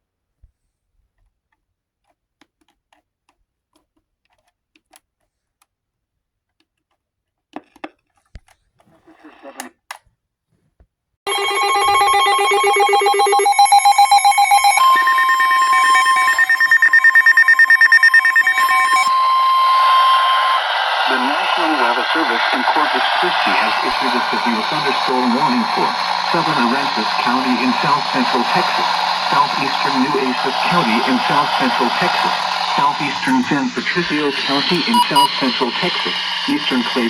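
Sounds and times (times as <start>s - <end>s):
loud electronic alarm tone: 11.3s - 37.0s.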